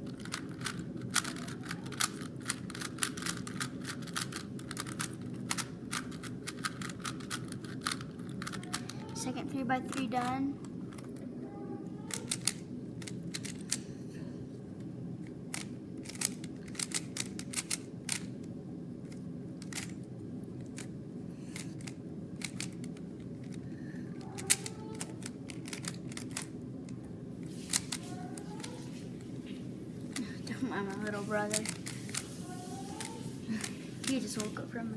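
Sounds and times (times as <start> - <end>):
steady low hum: 0.0 - 34.9
plastic cube clicking: 12.1 - 13.8, 21.6 - 23.6.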